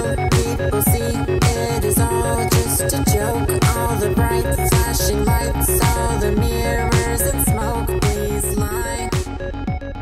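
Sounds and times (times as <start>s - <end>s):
electronic music with steady beat: 0.0s - 10.0s.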